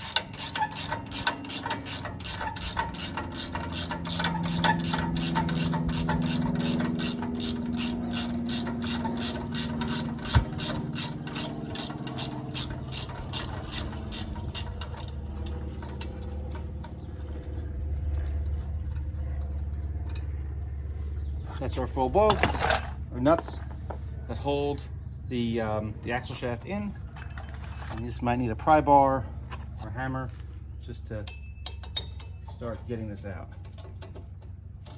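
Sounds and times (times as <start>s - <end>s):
ratchet wrench clicking: 0.0s - 15.6s.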